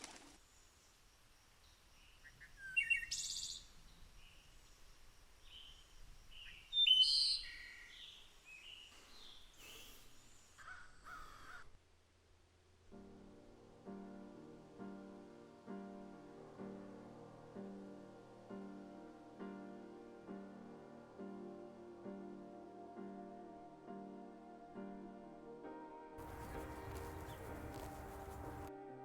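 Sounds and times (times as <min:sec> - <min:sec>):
soft piano music: 0:12.8 - 0:29.0
birds chirping: 0:26.2 - 0:28.7.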